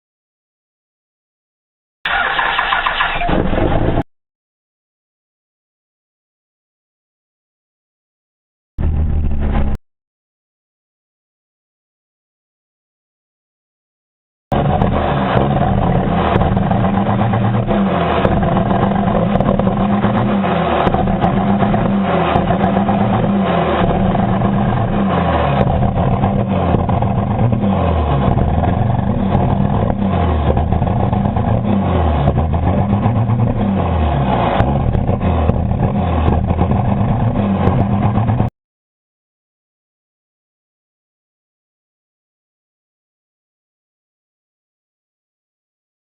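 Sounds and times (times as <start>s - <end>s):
diesel engine revving: 2.1s - 4.1s, 8.8s - 9.8s, 14.5s - 38.5s.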